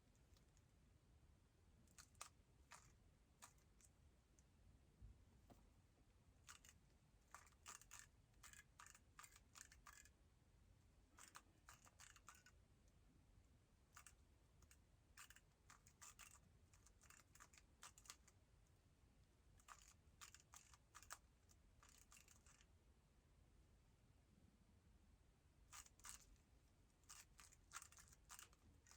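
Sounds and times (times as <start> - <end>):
puzzle cube plastic clicks: 6.5 - 10.1, 11.2 - 12.5, 14.0 - 18.3, 19.6 - 21.2, 21.8 - 22.6, 25.7 - 26.4, 27.1 - 28.9.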